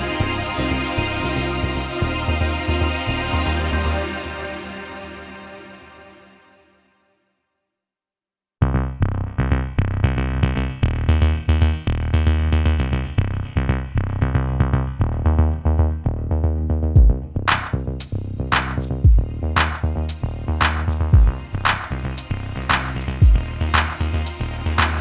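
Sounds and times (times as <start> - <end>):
electronic track with synth chords: 0.0 - 6.4, 17.0 - 25.0
background music: 0.0 - 6.7, 17.0 - 25.0.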